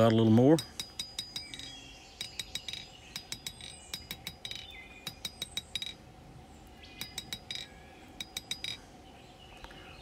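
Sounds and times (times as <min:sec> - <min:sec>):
hammer striking steel on anvil: 0:00.5 - 0:06.0.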